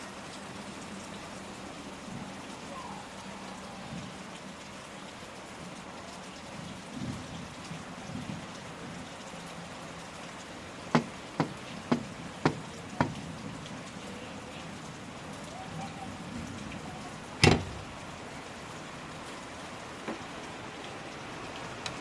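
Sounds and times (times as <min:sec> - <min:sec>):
steady rain: 0:00.0 - 0:22.0
sharp knocks: 0:10.9 - 0:13.2, 0:17.4 - 0:17.8.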